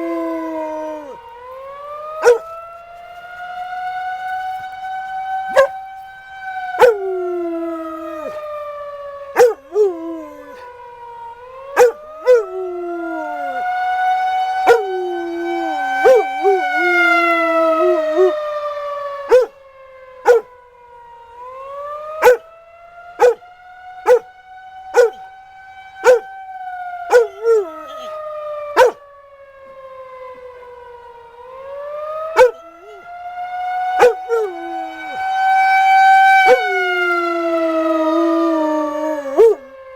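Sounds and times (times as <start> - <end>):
dog howling: 0.0 - 1.3, 2.2 - 2.6, 5.5 - 5.8, 6.7 - 8.6, 9.3 - 10.8, 11.8 - 18.6, 19.3 - 19.5, 20.3 - 20.5, 22.2 - 22.4, 23.2 - 23.4, 24.1 - 24.3, 25.0 - 25.2, 26.0 - 26.2, 27.1 - 28.2, 28.8 - 29.0, 32.3 - 33.2, 33.8 - 39.9
warning siren wailing: 0.0 - 39.9
dog barking: 2.2 - 2.5, 5.5 - 5.8, 6.8 - 7.0, 9.4 - 9.9, 11.8 - 12.5, 14.7 - 15.0, 15.9 - 16.7, 19.3 - 19.5, 20.2 - 20.5, 22.2 - 22.4, 23.2 - 23.4, 24.0 - 24.3, 24.9 - 25.2, 26.0 - 26.2, 27.1 - 27.7, 28.8 - 29.0, 32.4 - 33.0, 34.0 - 34.8, 36.5 - 36.8, 39.2 - 39.6.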